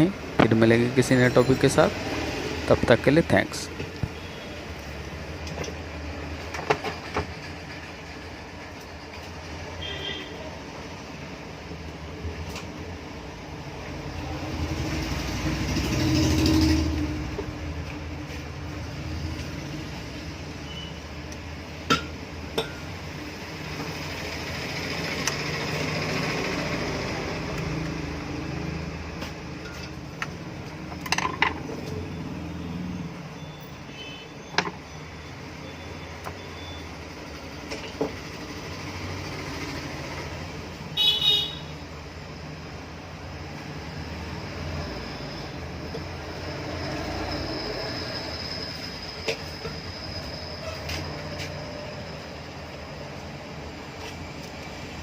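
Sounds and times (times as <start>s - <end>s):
outdoor background noise: 0.0s - 55.0s
vehicle horn toot: 9.8s - 10.4s, 33.9s - 34.4s, 41.0s - 41.7s.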